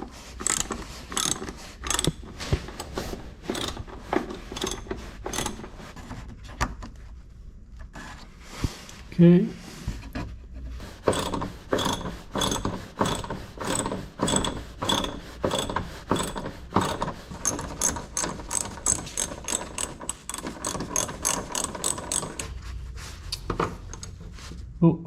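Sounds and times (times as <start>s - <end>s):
ratchet wrench clicking: 0.4s - 2.2s, 3.5s - 3.8s, 4.5s - 5.6s, 11.1s - 22.5s.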